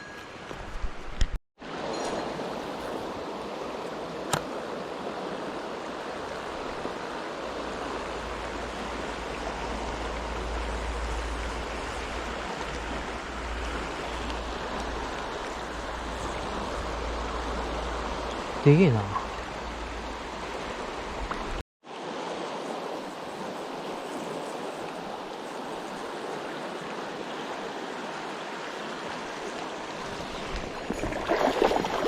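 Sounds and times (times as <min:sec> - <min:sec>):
stream water rushing: 0:00.5 - 0:32.0.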